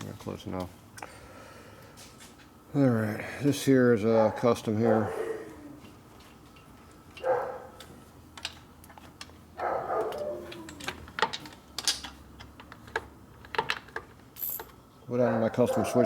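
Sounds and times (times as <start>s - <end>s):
clicks and taps of tools: 5.8s - 9.4s.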